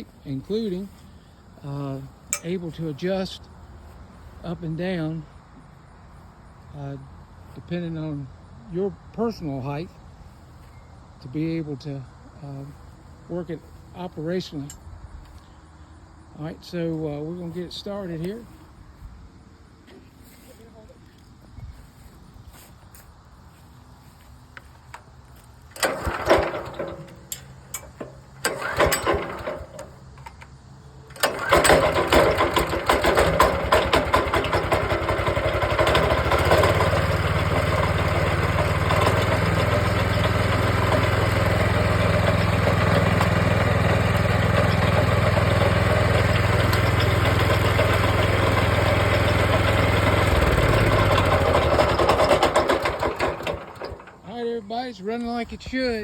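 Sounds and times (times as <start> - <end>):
engine running: 0.0 - 5.4, 21.8 - 56.0
engine start attempts: 25.0 - 54.4.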